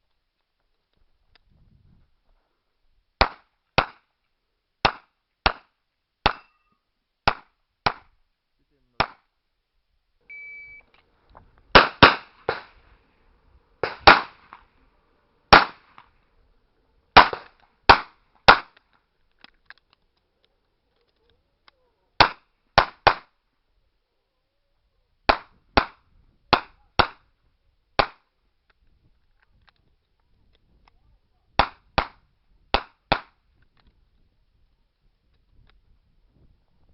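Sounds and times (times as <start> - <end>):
shot timer beep: 10.3 - 10.9
revolver gunshots: 11.7 - 12.9, 13.8 - 14.7, 15.5 - 16.1, 17.2 - 18.8.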